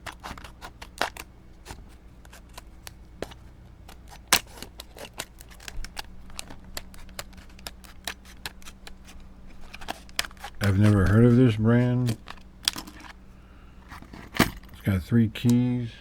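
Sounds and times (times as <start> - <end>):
plastic packaging crackling: 3.6 - 13.2.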